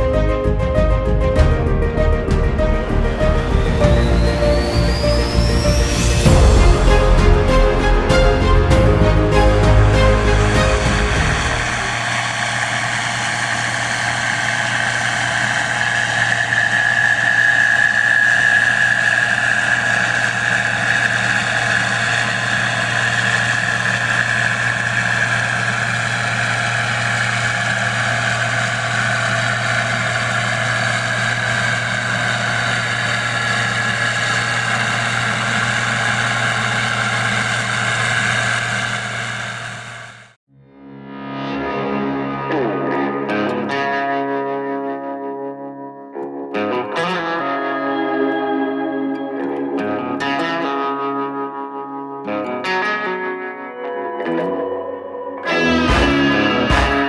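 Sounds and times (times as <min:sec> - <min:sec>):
farm machinery engine running: 0:00.0 - 0:40.4, 0:55.5 - 0:57.0.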